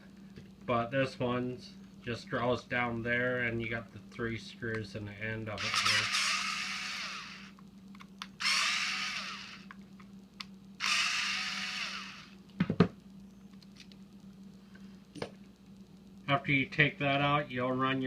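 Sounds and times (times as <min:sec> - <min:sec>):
cordless drill whining: 0:05.6 - 0:07.5, 0:08.4 - 0:09.7, 0:10.8 - 0:12.4.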